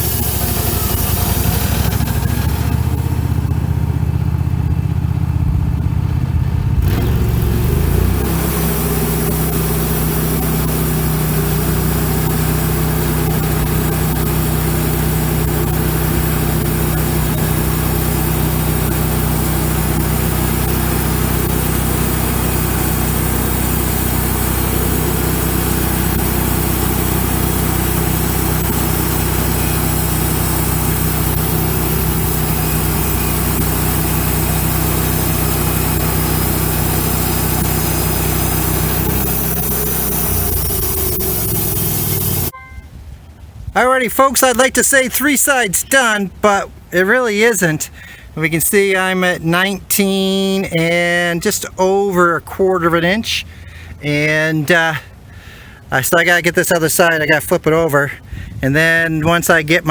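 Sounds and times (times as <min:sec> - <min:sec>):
band blade sawing wood: 0:00.0 - 0:03.2, 0:06.8 - 0:42.5
sawmill engine hum: 0:00.0 - 0:59.9.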